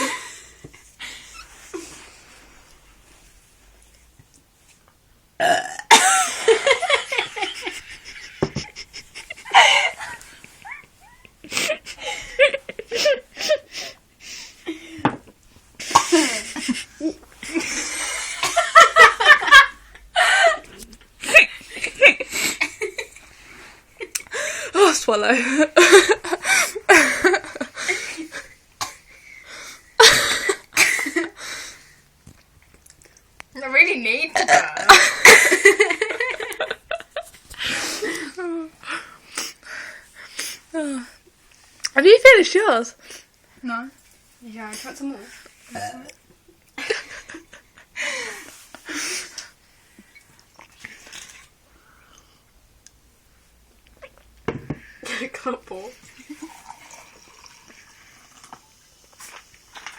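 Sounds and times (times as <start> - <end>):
person burping: 5.4 - 6.1, 34.4 - 34.9.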